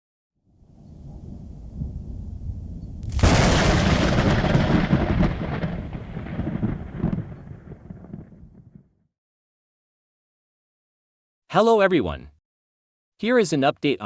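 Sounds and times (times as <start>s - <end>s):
thunderclap and rolling rumble: 0.7s - 9.0s.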